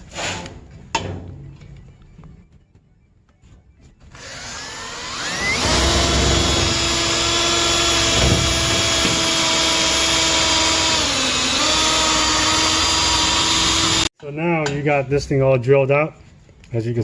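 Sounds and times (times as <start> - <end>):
power drill drilling steel: 4.2 - 14.1.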